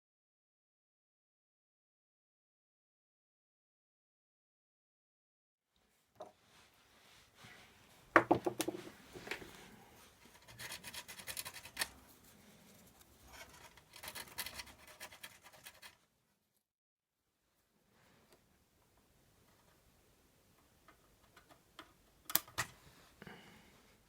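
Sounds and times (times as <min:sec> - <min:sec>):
scraping and rubbing on metal: 0:08.8 - 0:16.1.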